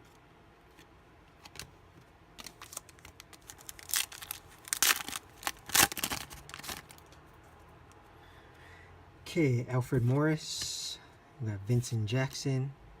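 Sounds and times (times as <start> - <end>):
card pack wrapper tearing and crinkling: 2.4 - 7.1.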